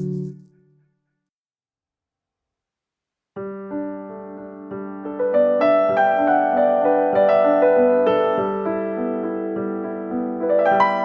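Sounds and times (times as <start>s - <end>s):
soft slow piano music: 3.4s - 11.0s.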